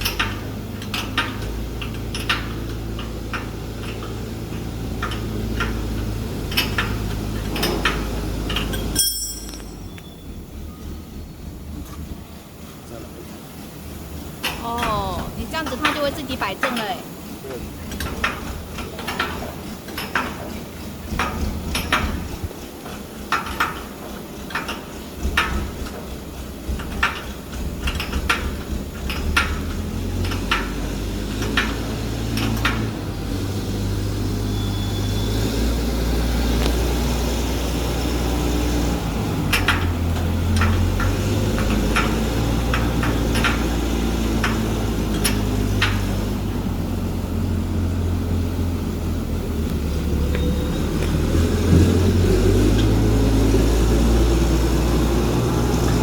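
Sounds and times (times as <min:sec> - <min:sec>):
metal clinks and knocks: 0:06.5 - 0:10.2.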